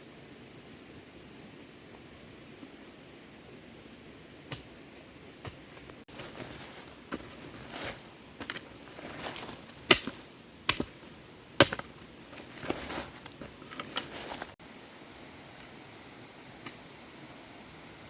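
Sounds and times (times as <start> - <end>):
rustling and handling noise: 5.4 - 14.6.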